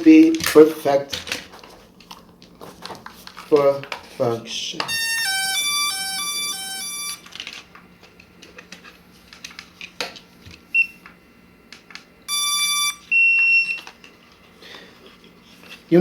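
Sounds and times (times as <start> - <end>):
remote controller beeping: 4.9 - 7.3, 12.3 - 13.8.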